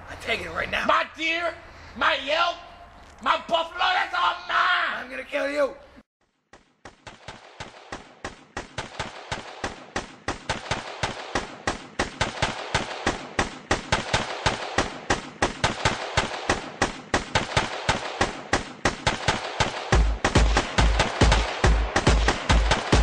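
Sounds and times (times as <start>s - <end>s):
rapid sharp cracks: 6.4s - 23.0s.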